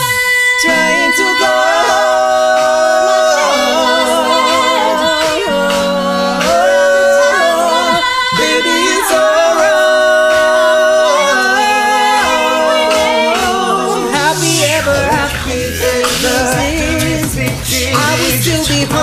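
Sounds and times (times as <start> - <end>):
a cappella group singing: 0.0 - 19.0
bass voice sliding down: 10.9 - 19.0.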